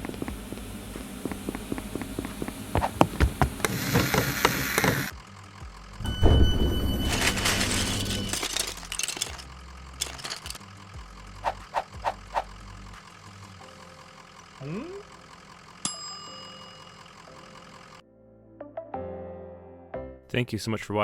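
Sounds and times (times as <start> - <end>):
short beeps: 6.0 - 8.3
bell-like ding: 6.0 - 8.4, 15.8 - 17.2
noisy clatter: 6.0 - 10.6.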